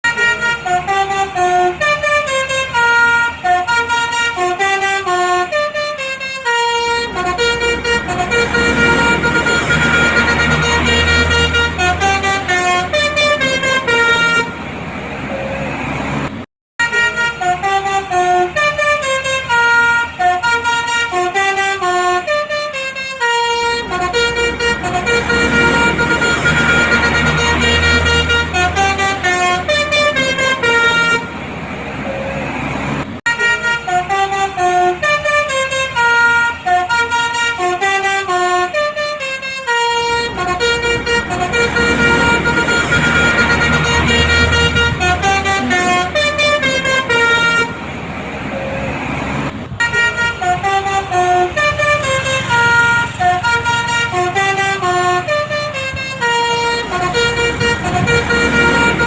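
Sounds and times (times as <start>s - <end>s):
air horn playing a melody: 0.0s - 14.6s, 16.8s - 31.4s, 33.3s - 47.8s, 49.8s - 59.0s
low engine rumble: 39.9s - 59.0s.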